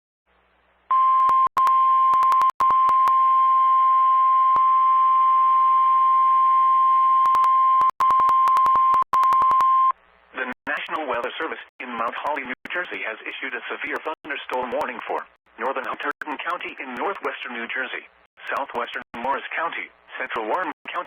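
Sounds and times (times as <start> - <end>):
clicks: 7.2 - 9.6.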